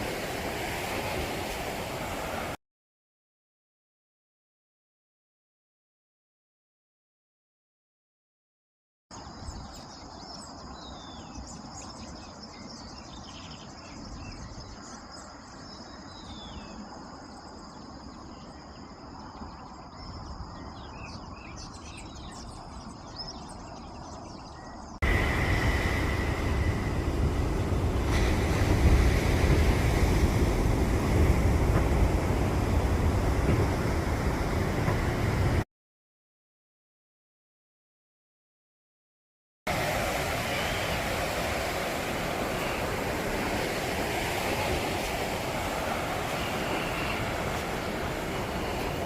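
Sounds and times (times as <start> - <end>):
birds chirping: 9.1 - 35.6, 39.8 - 49.0
loud low rushing noise: 25.0 - 35.6.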